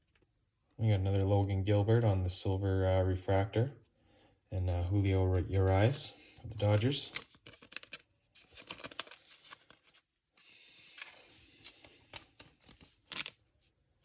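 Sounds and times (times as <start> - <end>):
trading cards clicking and rustling: 5.5 - 13.4.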